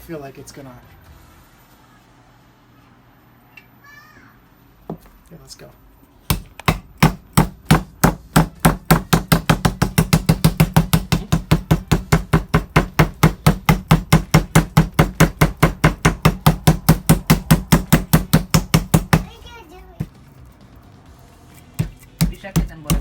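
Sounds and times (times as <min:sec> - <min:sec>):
meat tenderizer pounding steak: 0:06.3 - 0:19.4, 0:21.3 - 0:23.0.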